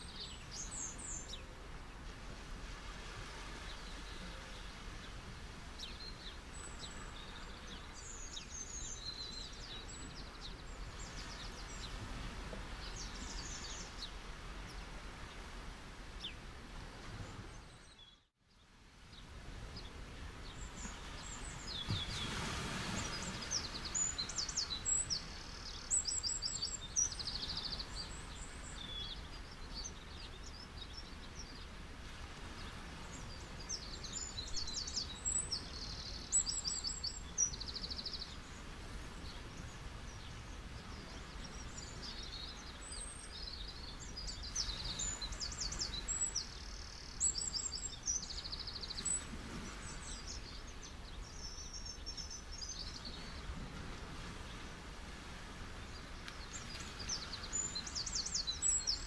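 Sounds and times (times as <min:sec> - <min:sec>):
ocean waves: 0:00.0 - 0:18.0, 0:18.7 - 0:59.0
birds chirping: 0:19.8 - 0:31.7, 0:32.6 - 0:53.5.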